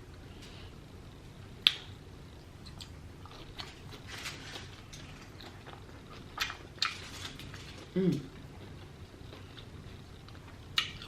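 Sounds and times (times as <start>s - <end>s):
person chewing: 2.6s - 11.0s.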